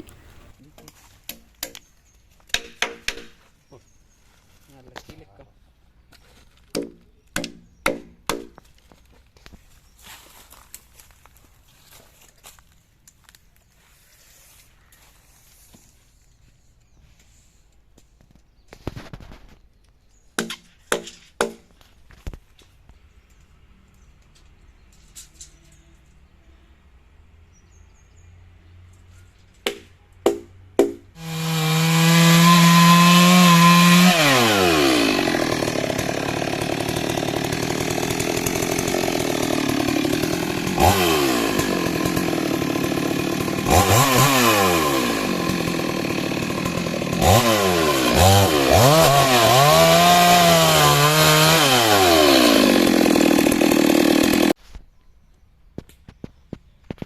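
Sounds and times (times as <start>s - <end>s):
chainsaw cutting wood: 0.0s - 0.6s, 2.5s - 3.4s, 6.7s - 8.6s, 29.6s - 54.6s.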